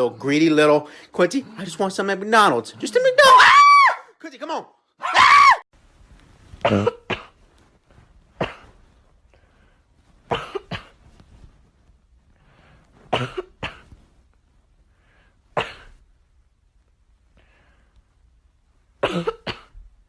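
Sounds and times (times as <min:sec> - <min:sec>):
person coughing: 0:06.6 - 0:07.4, 0:08.4 - 0:08.8, 0:10.3 - 0:11.0, 0:13.1 - 0:13.9, 0:15.6 - 0:16.0, 0:19.0 - 0:19.8.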